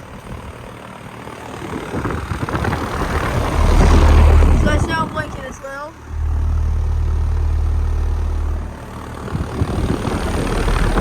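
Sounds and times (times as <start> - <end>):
rough uneven rushing noise: 6.1 - 11.0.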